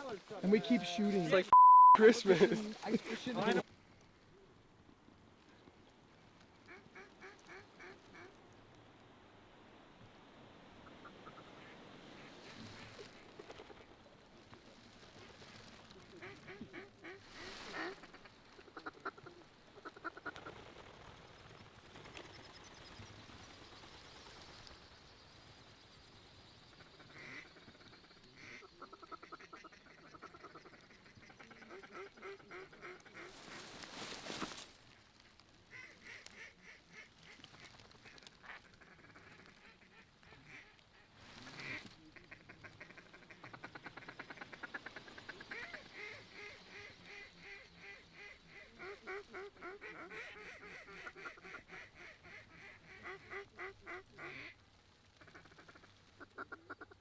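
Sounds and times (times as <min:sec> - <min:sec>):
ducks quacking: 0:00.0 - 0:03.6, 0:27.0 - 0:34.6, 0:35.7 - 0:54.6.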